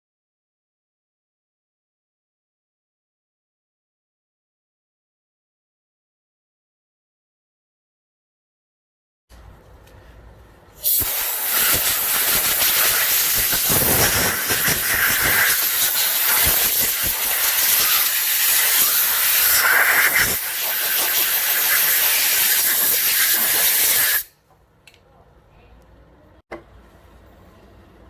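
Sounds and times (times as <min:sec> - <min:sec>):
spray jet hissing: 0:10.8 - 0:24.3.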